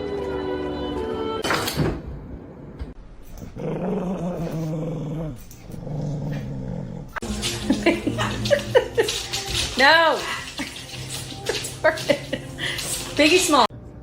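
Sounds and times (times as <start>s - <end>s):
dog growling: 3.4s - 7.3s.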